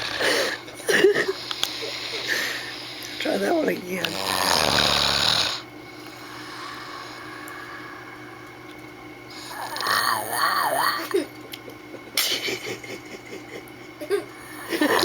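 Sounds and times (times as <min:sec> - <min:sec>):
man snoring: 0:04.1 - 0:05.6, 0:09.3 - 0:11.1, 0:14.4 - 0:15.0
quiet breathing: 0:06.0 - 0:08.5.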